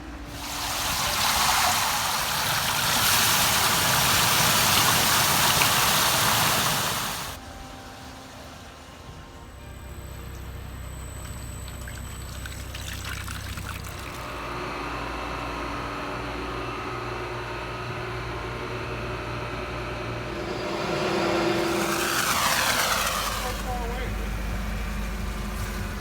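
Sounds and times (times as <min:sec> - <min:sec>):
steady mechanical hum: 0:00.0 - 0:26.0
liquid pouring and splashing: 0:00.3 - 0:07.4, 0:11.8 - 0:14.3.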